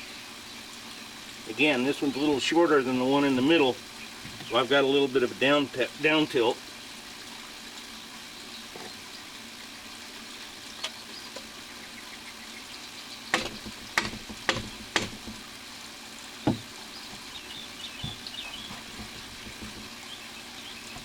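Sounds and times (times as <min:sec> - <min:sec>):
steady hiss: 0:00.0 - 0:21.0
plastic pipe knocking: 0:13.3 - 0:15.4, 0:16.4 - 0:17.3, 0:18.0 - 0:20.0.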